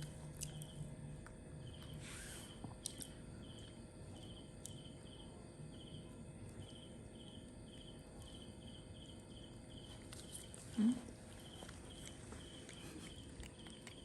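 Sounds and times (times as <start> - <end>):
cricket chirping: 1.6 - 14.0.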